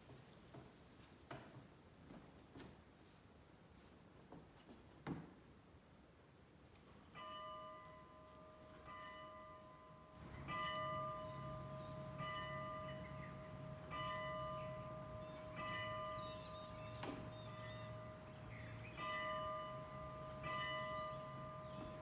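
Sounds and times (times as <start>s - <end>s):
church bell tolling: 7.2s - 22.0s.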